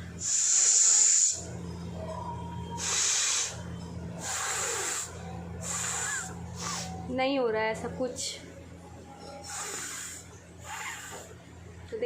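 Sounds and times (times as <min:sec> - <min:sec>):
air blown hard through nose: 0:02.8 - 0:03.6, 0:04.2 - 0:07.0.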